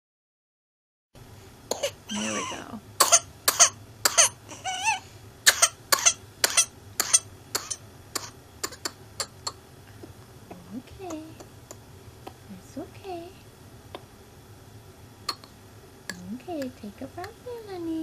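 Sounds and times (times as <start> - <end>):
child coughing harshly: 1.7 - 4.4, 5.5 - 9.5.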